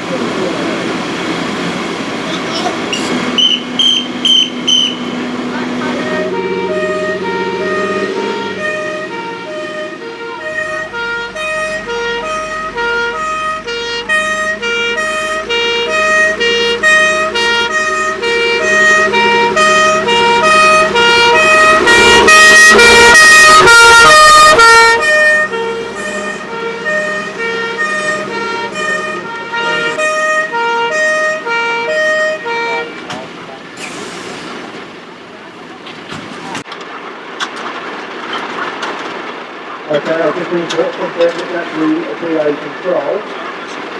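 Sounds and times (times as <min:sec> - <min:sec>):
truck engine: 0:00.0 - 0:43.9
two-tone fire engine siren: 0:02.9 - 0:33.2.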